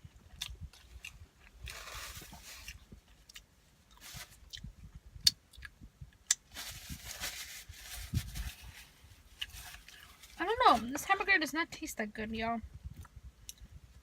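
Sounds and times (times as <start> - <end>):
chewing with wet mouth clicks: 4.5 - 6.4.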